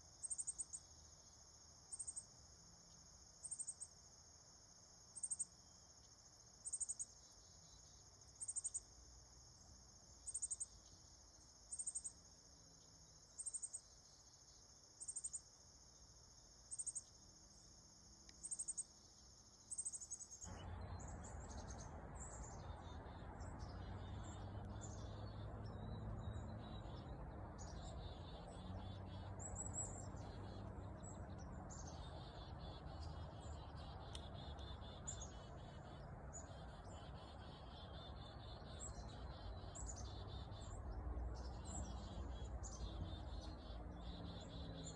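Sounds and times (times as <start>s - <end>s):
crickets trilling: 0.0s - 40.7s
birds chirping: 19.6s - 44.9s.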